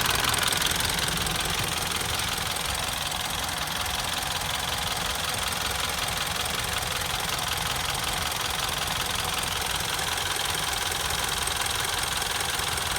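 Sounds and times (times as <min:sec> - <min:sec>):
car engine idling: 0:00.0 - 0:12.9
fuel injectors ticking: 0:00.0 - 0:12.9.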